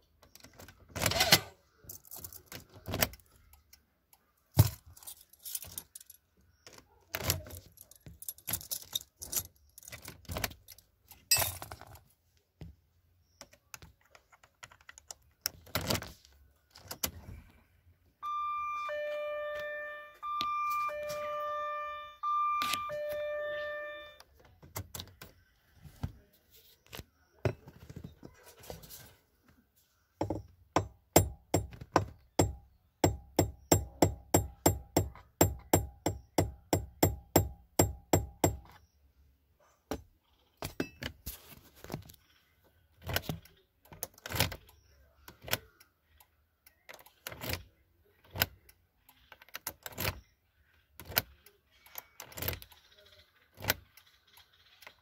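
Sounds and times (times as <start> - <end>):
regular clicks: 13.4 - 17.2
tools knocking on plastic trim: 30.2 - 38.7.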